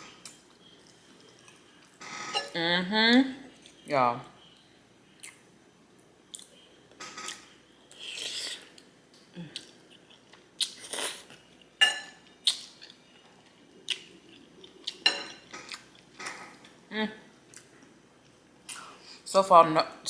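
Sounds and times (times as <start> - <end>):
fork scraping on plate: 2.0 - 2.6
chewing and mouth clicks: 4.5 - 5.4, 6.3 - 6.6, 12.4 - 16.0.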